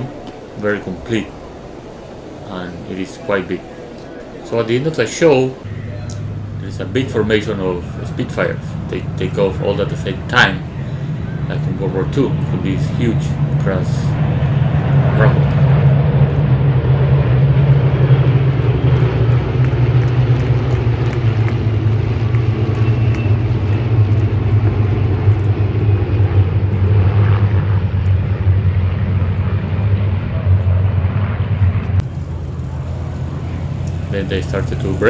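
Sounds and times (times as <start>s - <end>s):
propeller planes taking off: 0.0s - 35.0s.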